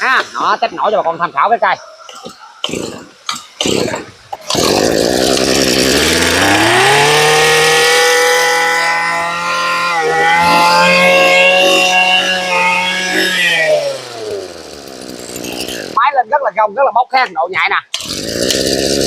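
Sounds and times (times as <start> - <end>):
brush cutter engine revving: 2.2 - 16.0, 17.9 - 19.0.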